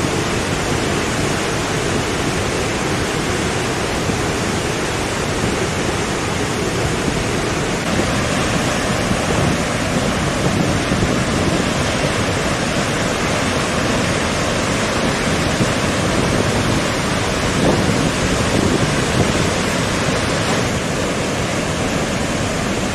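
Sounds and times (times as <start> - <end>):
waterfall rushing: 0.0 - 22.9.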